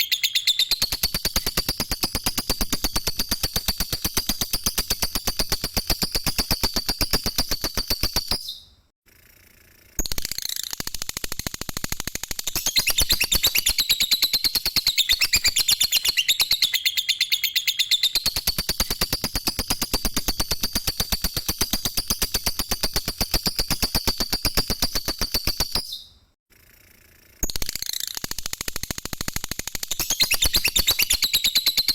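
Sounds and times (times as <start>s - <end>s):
lovebird chattering trill: 0.0s - 4.4s, 12.6s - 19.6s, 30.0s - 31.9s.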